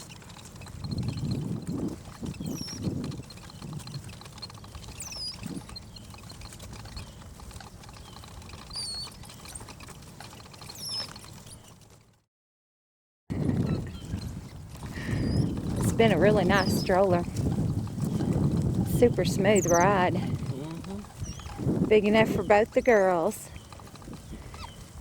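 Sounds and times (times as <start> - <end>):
stroller rolling on road: 0.0 - 12.3, 13.3 - 25.0
low bumps: 13.3 - 25.0.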